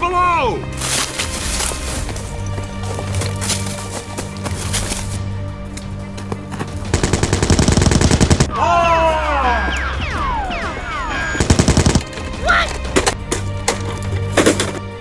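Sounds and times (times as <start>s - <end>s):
background music: 0.0s - 15.0s
automatic gunfire bursts: 6.9s - 8.5s, 11.4s - 12.3s.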